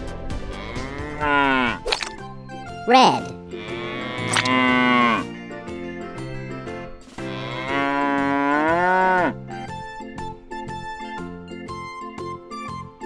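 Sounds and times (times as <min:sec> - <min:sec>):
light background music: 0:00.0 - 0:13.0
cartoon cow mooing: 0:02.9 - 0:03.4.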